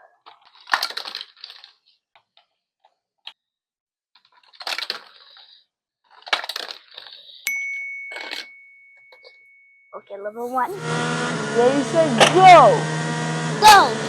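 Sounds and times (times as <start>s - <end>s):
plastic toy pieces clattering: 0.2s - 2.3s, 4.2s - 7.4s
high ringing ding: 7.5s - 10.8s.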